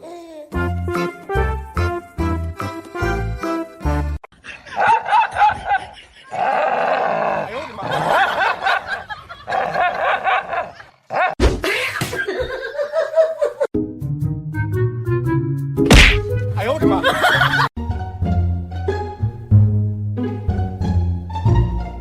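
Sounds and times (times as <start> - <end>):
sharp knock: 15.9 - 16.3.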